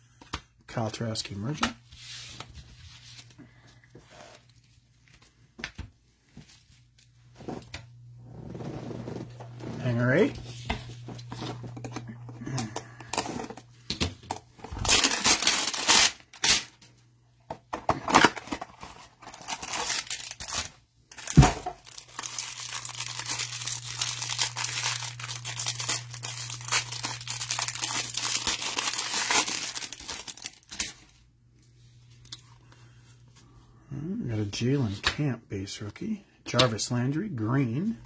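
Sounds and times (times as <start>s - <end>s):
wrapping crinkling: 14.7s - 16.7s, 18.8s - 31.1s.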